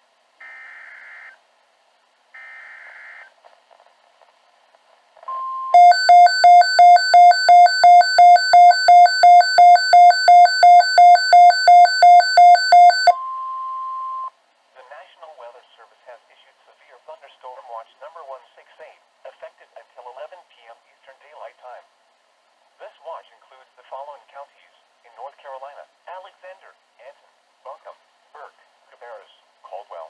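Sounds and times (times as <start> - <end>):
pulsing alarm beeping: 5.3 - 14.3
warning alarm tone: 5.3 - 14.3.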